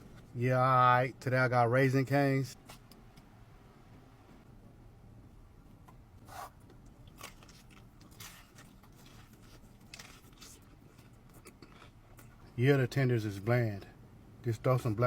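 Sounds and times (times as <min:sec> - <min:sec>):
crunchy chewing of fried chicken: 0:06.6 - 0:12.5.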